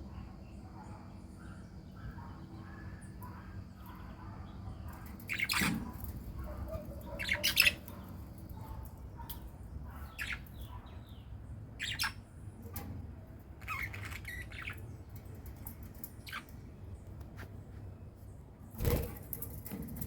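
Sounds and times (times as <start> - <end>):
birds squawking and chirping: 0.4 - 16.8.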